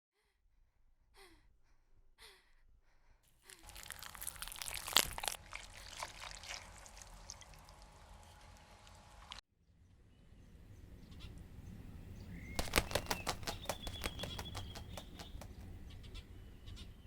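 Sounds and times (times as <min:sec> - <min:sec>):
crackling rustling noise: 0:03.5 - 0:05.4.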